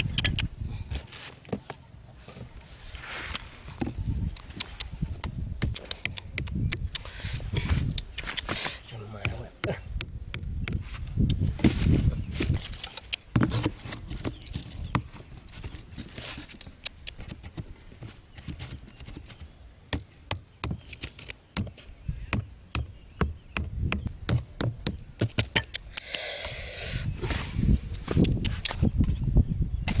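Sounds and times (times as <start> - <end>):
rustling: 0.9 - 3.8
high bird chirps: 8.0 - 9.2, 22.4 - 27.3.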